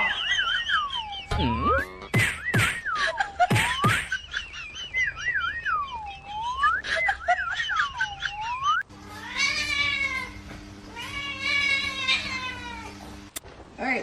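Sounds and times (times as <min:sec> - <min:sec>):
warbling whistle: 0:04.8 - 0:07.0, 0:08.0 - 0:08.8
cat yowling: 0:08.0 - 0:13.0.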